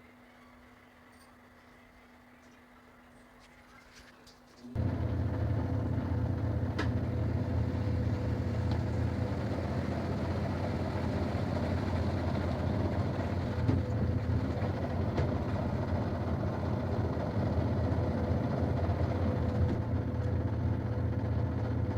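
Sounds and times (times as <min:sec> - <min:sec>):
machine motor humming: 0:04.8 - 0:21.2.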